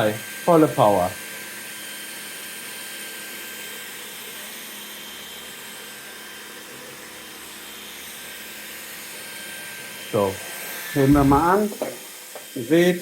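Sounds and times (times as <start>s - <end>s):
vacuum cleaner running: 4.5s - 13.0s.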